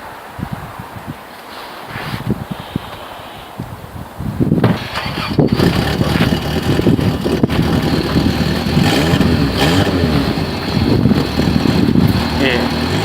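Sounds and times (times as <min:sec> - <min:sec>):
car engine revving: 0:04.7 - 0:13.0.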